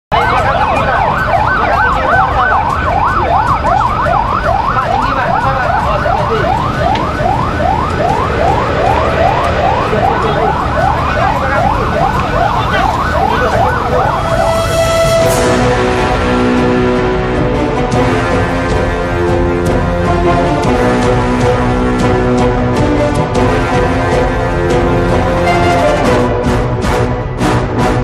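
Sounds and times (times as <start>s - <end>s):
electronic siren yelping: 0.1s - 15.6s
loud low rumble: 6.5s - 12.4s.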